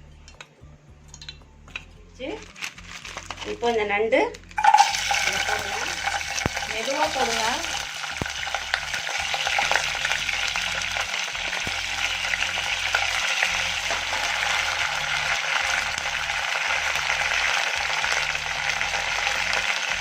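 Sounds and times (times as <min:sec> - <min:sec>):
food sizzling in hot oil: 0:04.6 - 0:20.0.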